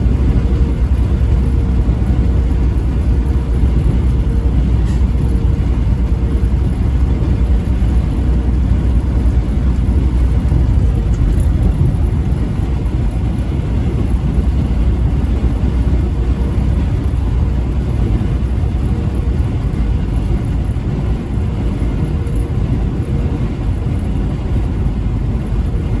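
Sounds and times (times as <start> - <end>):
heavy vehicle rumble: 0.0 - 26.0.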